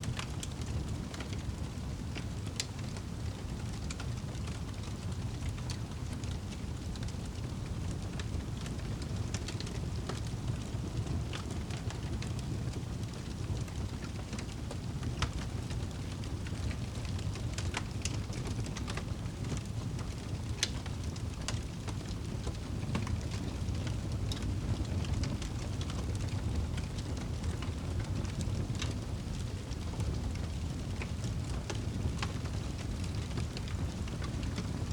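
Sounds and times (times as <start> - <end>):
campfire rumble: 0.0 - 34.9
burning wood crackling: 0.1 - 34.9.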